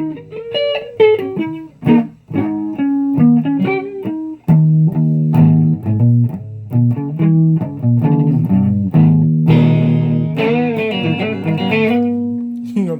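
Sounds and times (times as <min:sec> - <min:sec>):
guitar plucked notes and chords: 0:00.0 - 0:12.9.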